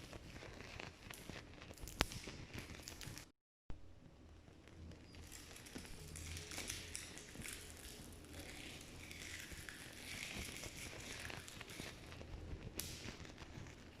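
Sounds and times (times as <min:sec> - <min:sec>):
small crackling snaps: 0:00.0 - 0:03.3, 0:04.1 - 0:14.0
dry twig snapping: 0:01.1 - 0:03.3, 0:12.8 - 0:13.5
cloth rubbing and leaves rustling: 0:05.2 - 0:14.0.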